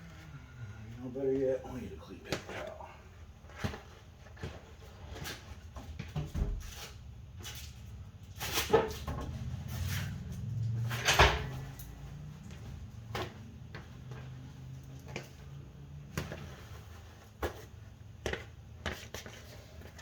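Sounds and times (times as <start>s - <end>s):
objects clunking and clicking: 3.5s - 20.0s.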